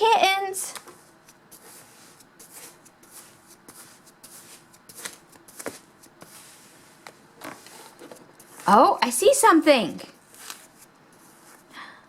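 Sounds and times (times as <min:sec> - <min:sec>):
hands scraping through sand: 0:01.5 - 0:07.0.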